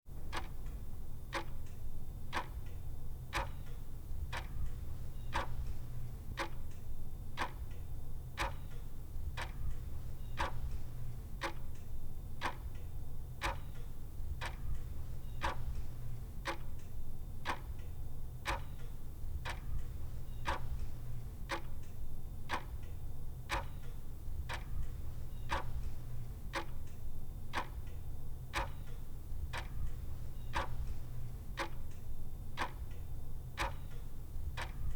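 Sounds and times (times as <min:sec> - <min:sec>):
clock ticking: 0:00.3 - 0:05.8, 0:06.4 - 0:06.8, 0:07.4 - 0:07.7, 0:08.4 - 0:08.8, 0:09.4 - 0:11.8, 0:12.4 - 0:12.8, 0:13.4 - 0:13.8, 0:14.4 - 0:17.8, 0:18.4 - 0:21.9, 0:22.5 - 0:22.9, 0:23.5 - 0:32.0, 0:32.6 - 0:33.0, 0:33.6 - 0:34.9.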